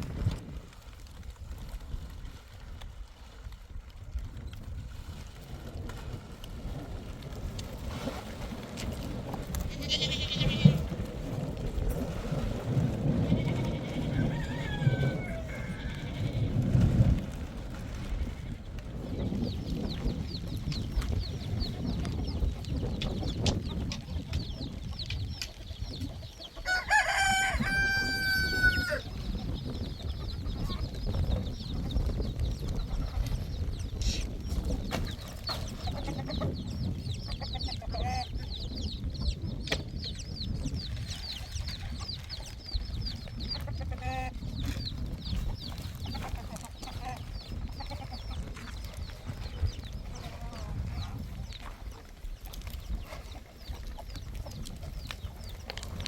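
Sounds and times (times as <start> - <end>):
rooster crowing: 14.1 - 16.0, 26.6 - 29.0
chicken clucking: 19.8 - 56.0.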